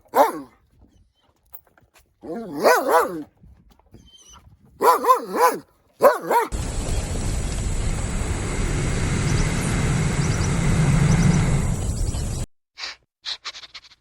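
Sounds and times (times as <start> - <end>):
dog yipping: 0.0 - 0.5, 2.2 - 3.2, 4.0 - 6.6
steady rumbling hiss: 6.6 - 12.4.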